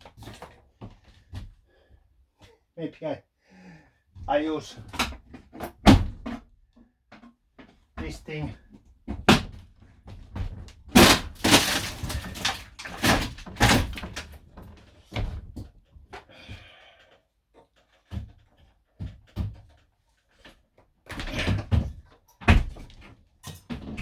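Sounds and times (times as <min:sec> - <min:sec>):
knocks and clatter of handled tools: 0:10.1 - 0:16.3, 0:21.1 - 0:24.0.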